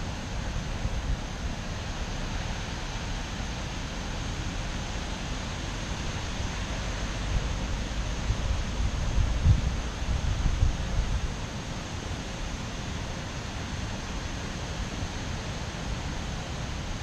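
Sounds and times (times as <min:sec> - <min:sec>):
wind buffeting microphone: 0:08.4 - 0:11.3.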